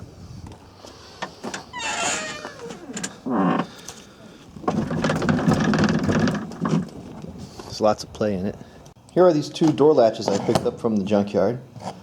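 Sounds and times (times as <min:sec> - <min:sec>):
door hinge creaking: 0:01.6 - 0:03.8.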